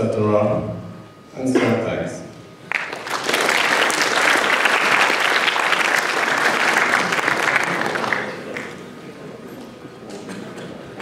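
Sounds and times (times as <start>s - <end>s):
audience applauding: 2.6s - 9.0s.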